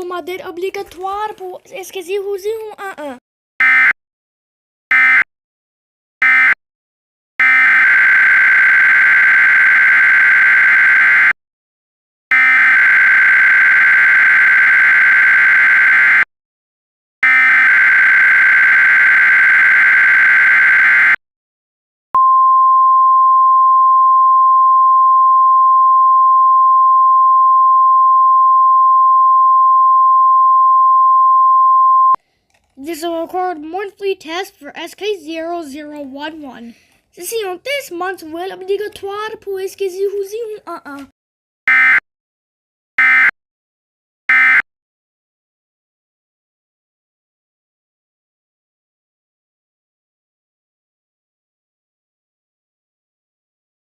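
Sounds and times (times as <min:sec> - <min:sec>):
steady warning alarm tone: 0:03.6 - 0:04.0, 0:04.9 - 0:05.3, 0:06.2 - 0:06.6, 0:07.4 - 0:11.4, 0:12.3 - 0:16.3, 0:17.2 - 0:21.2, 0:41.7 - 0:42.0, 0:43.0 - 0:43.3, 0:44.3 - 0:44.6.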